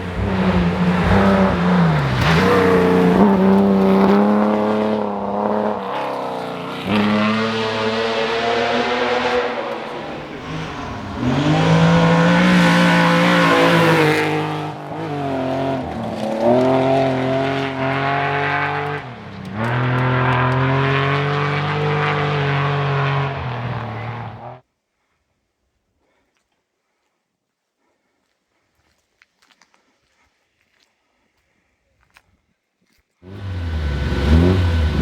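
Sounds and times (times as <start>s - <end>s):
rally car engine at high revs: 0.0s - 24.6s, 33.2s - 35.0s.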